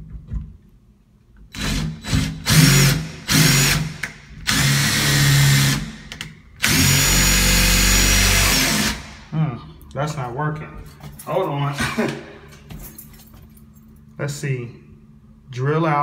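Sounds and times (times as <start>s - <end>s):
power drill whining: 1.5s - 5.9s, 6.6s - 9.2s.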